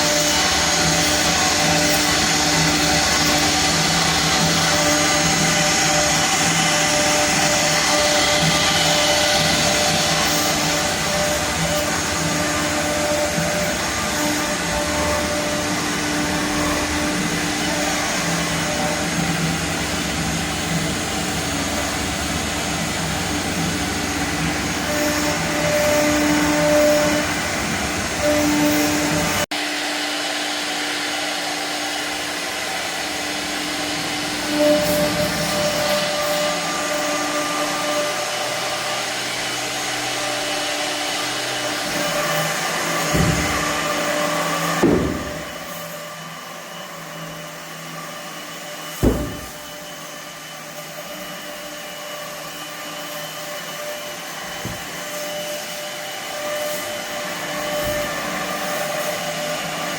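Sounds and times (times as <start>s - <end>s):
router spindle whine: 0.0s - 59.9s
short thumps: 49.0s - 49.7s.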